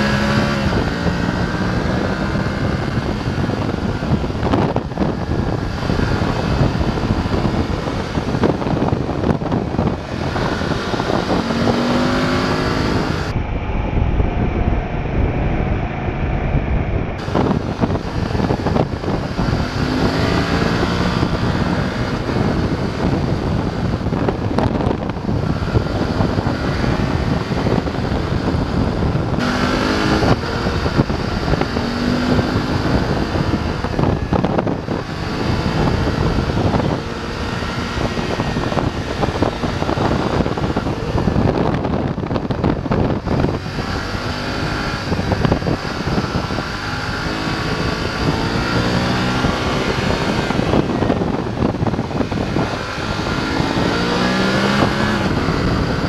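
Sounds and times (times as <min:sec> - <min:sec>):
motorcycle engine accelerating: 0:00.0 - 0:56.0
wind rush on microphone: 0:00.0 - 0:56.0.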